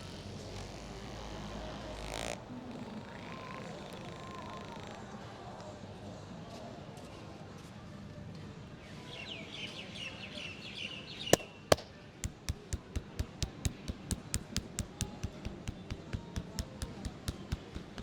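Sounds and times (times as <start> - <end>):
loud sharp snaps: 11.3 - 18.0
rhythmic hand slaps: 11.4 - 18.0.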